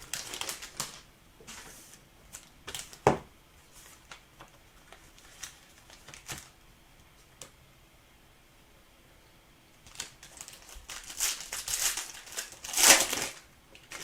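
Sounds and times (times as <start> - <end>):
trading cards and packaging handled: 0.0 - 3.0, 3.8 - 6.6, 9.9 - 14.0.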